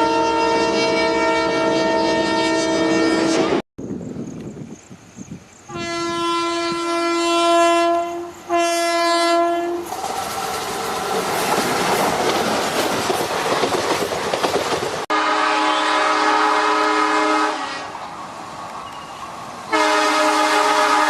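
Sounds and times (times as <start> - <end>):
locomotive horn blasts: 0.0 - 3.6, 5.7 - 9.9, 15.1 - 18.0, 19.7 - 21.0
train wheels rumbling and clattering: 9.8 - 15.1.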